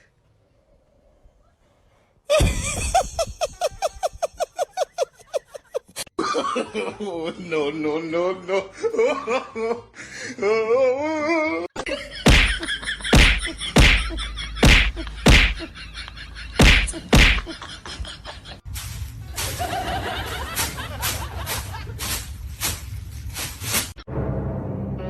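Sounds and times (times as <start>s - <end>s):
background noise: 0.0s - 24.0s
loud sharp slaps: 12.2s - 15.6s, 16.6s - 17.5s.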